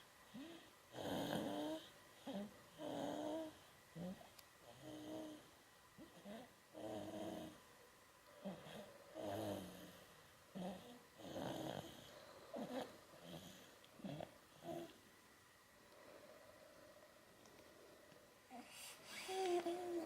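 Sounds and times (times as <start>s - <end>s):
baby snoring softly: 0.3s - 7.6s, 8.4s - 15.0s, 18.5s - 20.0s.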